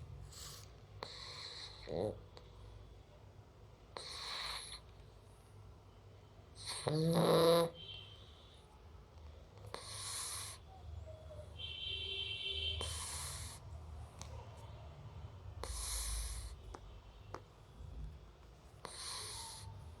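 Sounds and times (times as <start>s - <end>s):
puppy snoring: 0.2s - 2.5s, 3.9s - 4.9s, 6.6s - 7.8s, 9.6s - 10.7s, 12.8s - 13.7s, 15.6s - 16.8s, 18.8s - 20.0s.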